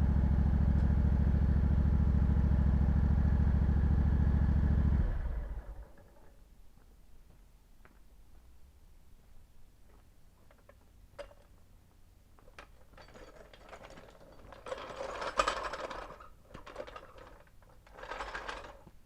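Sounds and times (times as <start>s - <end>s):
metal hardware clicking and clanking: 10.4s - 11.6s, 12.4s - 18.9s
metal rattling and scraping: 12.4s - 19.0s.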